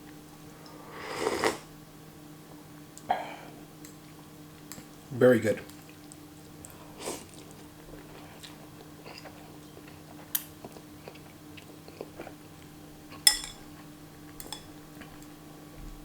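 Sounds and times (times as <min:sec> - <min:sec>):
person chewing noodles: 0:05.8 - 0:13.3
utensil clinking against bowl: 0:13.2 - 0:13.6, 0:14.4 - 0:14.7.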